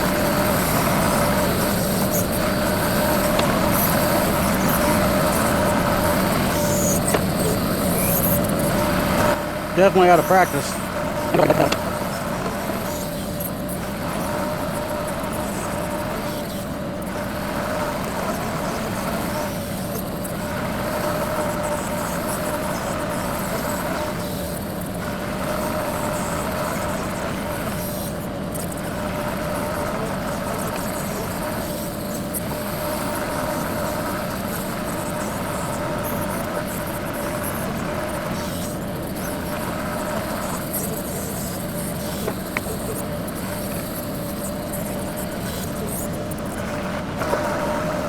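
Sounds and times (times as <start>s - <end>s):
tractor diesel engine running: 0.0s - 12.9s.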